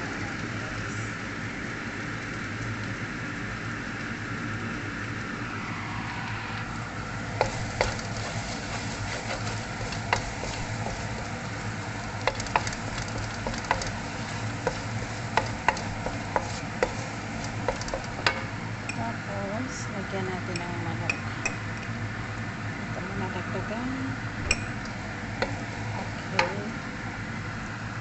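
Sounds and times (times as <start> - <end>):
spices sizzling in oil: 0.0 - 28.0
utensil knocking against pan: 12.2 - 14.0, 14.6 - 17.0, 17.6 - 19.0.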